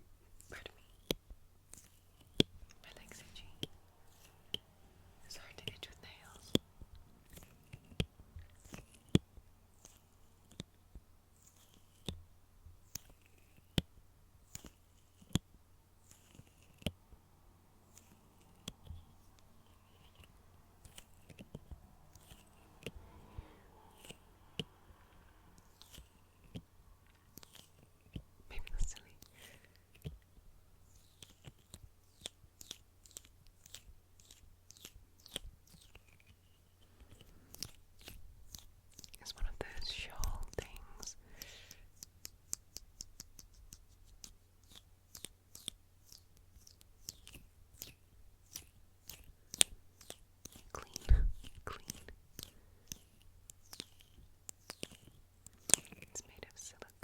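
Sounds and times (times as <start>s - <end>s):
faint scratching: 0.4s - 10.7s, 17.8s - 41.2s.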